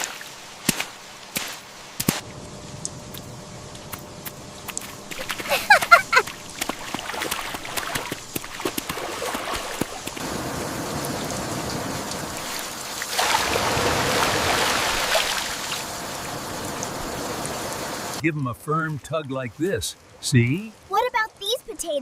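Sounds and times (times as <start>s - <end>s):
heavy rain falling: 10.2s - 18.8s.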